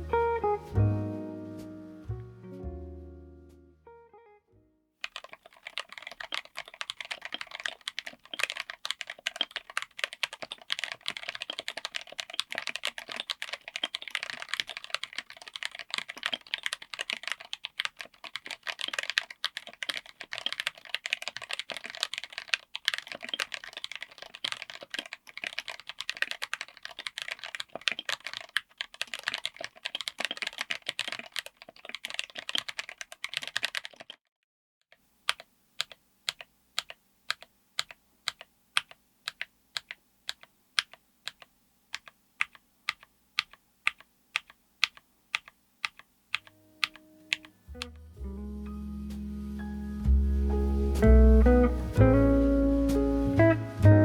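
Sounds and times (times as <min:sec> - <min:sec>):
fast mechanical keyboard typing: 0:05.0 - 0:34.2, 0:35.2 - 0:47.9.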